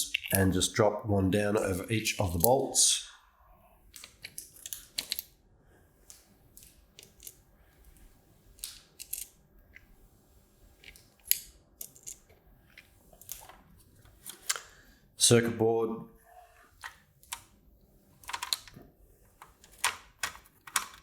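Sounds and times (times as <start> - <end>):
small spacers clicking on plastic: 8.6 - 9.4, 19.4 - 21.0.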